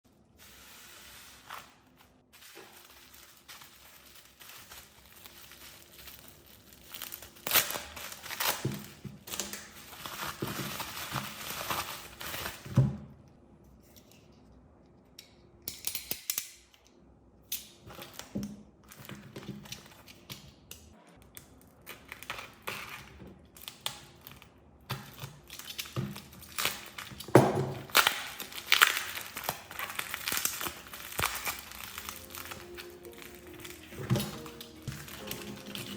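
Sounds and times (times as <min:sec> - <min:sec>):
crinkling and scraping: 0:00.1 - 0:12.9, 0:21.7 - 0:35.9.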